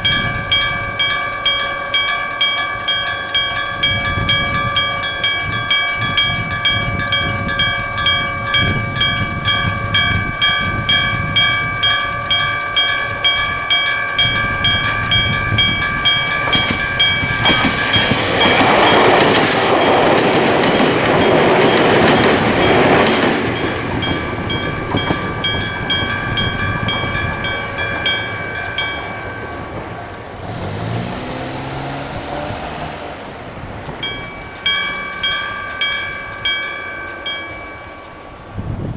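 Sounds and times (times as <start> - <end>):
level-crossing bell clanging: 0.0 - 38.9
train passing: 0.0 - 38.9.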